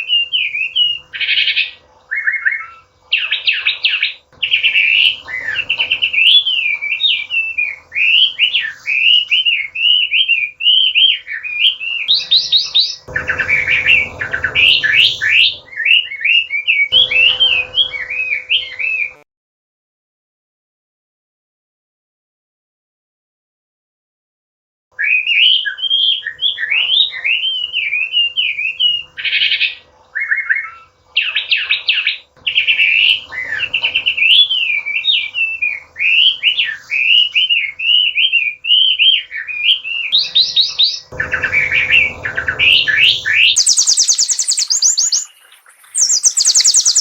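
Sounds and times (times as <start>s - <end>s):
bird singing whistled phrases: 0.0s - 19.2s, 25.0s - 47.0s
bird trills: 0.0s - 19.2s, 25.0s - 47.0s.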